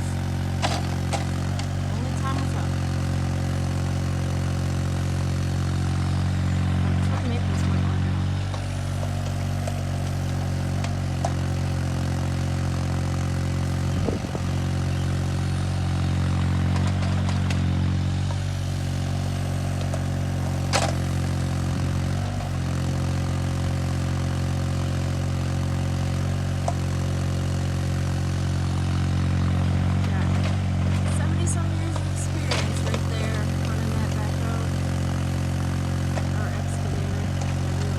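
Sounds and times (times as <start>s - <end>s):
engine running steadily: 0.0s - 37.9s.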